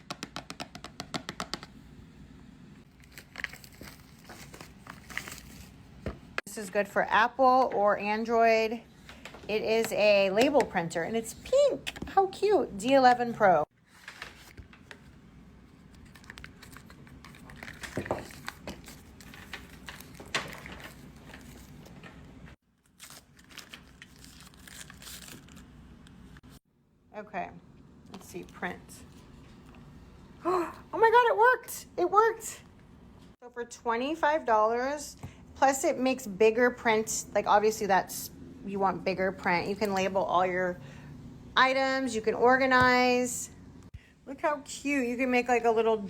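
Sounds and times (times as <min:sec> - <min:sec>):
plastic crinkling: 0:02.9 - 0:05.8, 0:16.0 - 0:22.0, 0:22.8 - 0:25.7.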